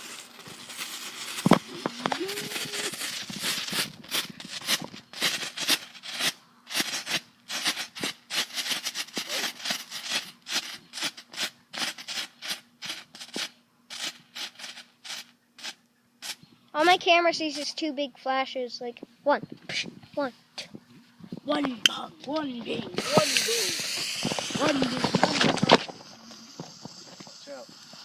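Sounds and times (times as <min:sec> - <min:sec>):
firework crackling pops: 0:00.0 - 0:17.7, 0:21.4 - 0:28.0
firework bang: 0:22.7 - 0:28.0.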